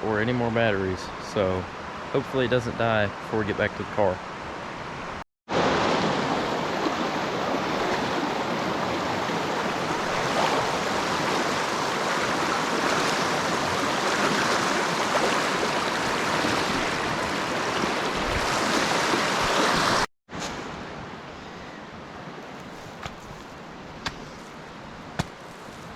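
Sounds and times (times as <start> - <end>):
creek water rushing: 5.5 - 20.1.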